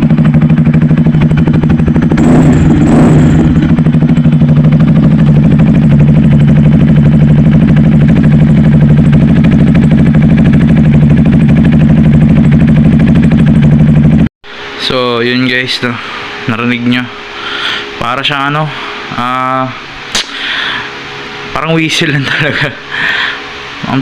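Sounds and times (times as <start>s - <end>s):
motorcycle engine idling: 0.0s - 14.3s.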